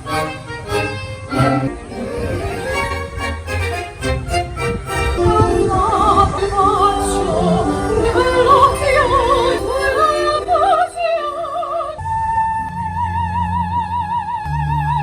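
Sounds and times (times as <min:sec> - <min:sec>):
orchestral accompaniment: 0:00.0 - 0:10.6
operatic singing: 0:00.0 - 0:12.8.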